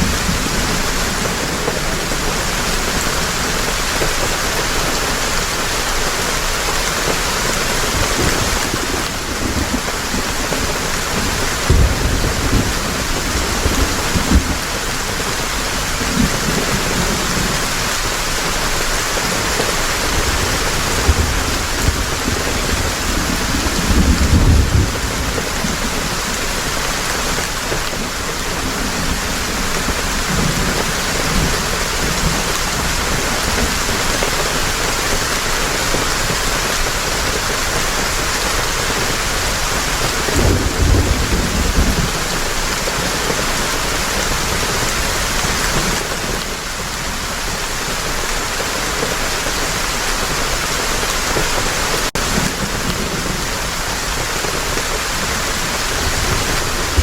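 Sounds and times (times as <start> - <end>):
heavy rain: 0.0 - 57.0
thunder rolling: 7.1 - 35.0, 39.1 - 47.0, 52.1 - 57.0.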